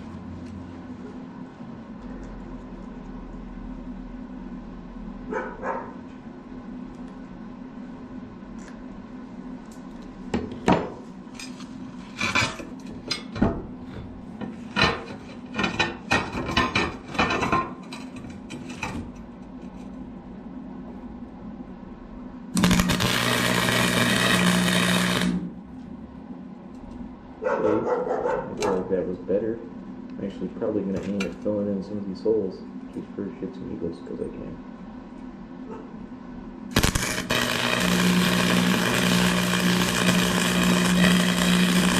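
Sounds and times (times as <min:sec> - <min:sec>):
welder humming: 0:22.5 - 0:25.8, 0:36.7 - 0:41.9
welding arc crackling: 0:22.6 - 0:25.6, 0:36.7 - 0:41.9.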